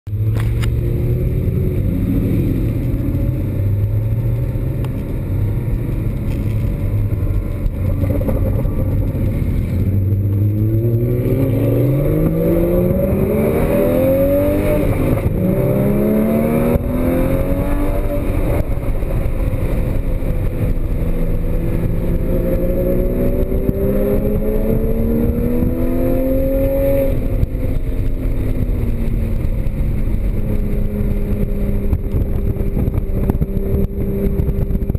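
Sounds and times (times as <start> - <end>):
sports car engine accelerating: 0.1 - 34.9.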